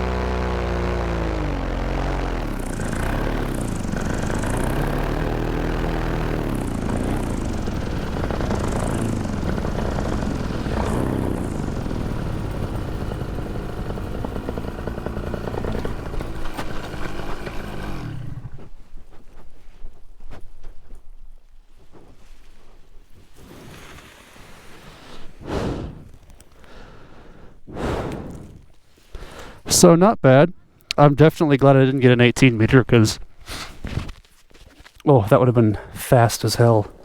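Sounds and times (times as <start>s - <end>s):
paramotor engine and propeller: 0.0s - 18.7s.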